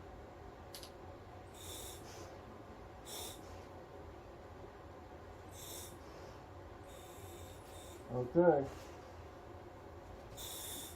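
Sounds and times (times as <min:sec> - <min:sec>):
hissing regulator breaths: 0:01.5 - 0:02.4, 0:03.0 - 0:03.7, 0:05.5 - 0:09.3, 0:10.3 - 0:10.9.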